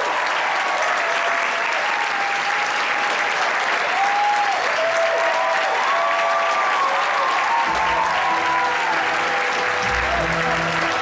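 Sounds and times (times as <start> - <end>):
audience applauding and cheering: 0.0 - 11.0.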